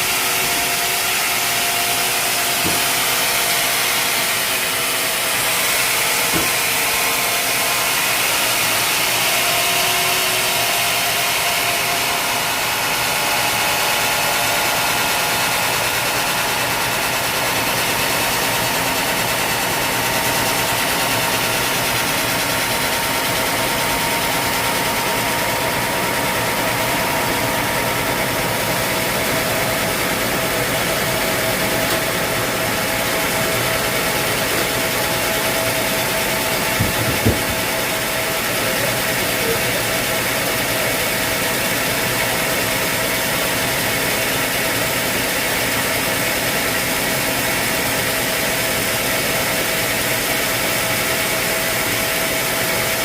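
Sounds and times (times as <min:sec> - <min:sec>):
sawmill engine running: 0:00.0 - 0:53.0
short knocks: 0:36.7 - 0:37.7.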